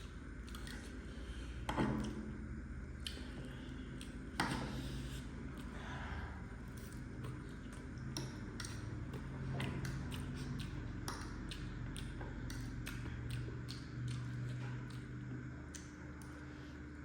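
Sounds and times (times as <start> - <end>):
steady low hum: 0.0 - 17.0
chewing mouth clicks and smacks: 0.4 - 1.0, 2.9 - 5.8, 6.7 - 16.5.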